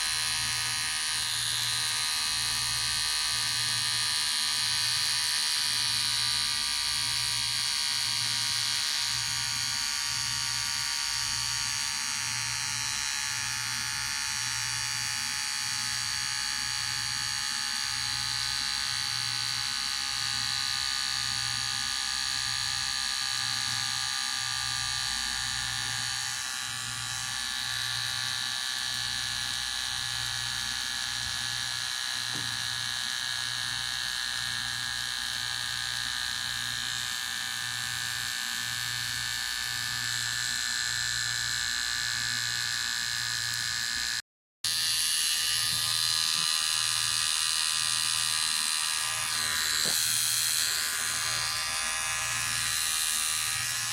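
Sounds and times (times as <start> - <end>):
electric hair clipper buzzing: 0.0 - 53.9.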